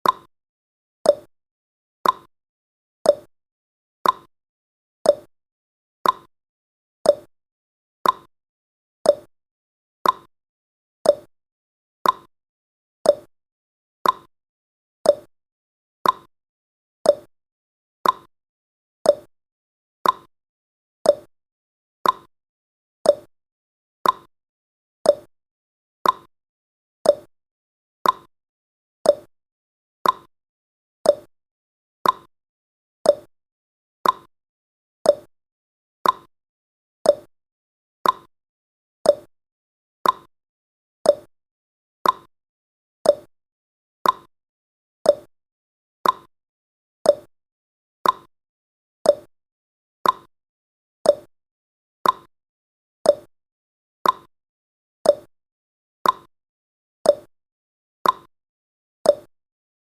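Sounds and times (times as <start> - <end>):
clock ticking: 46.0 - 46.3.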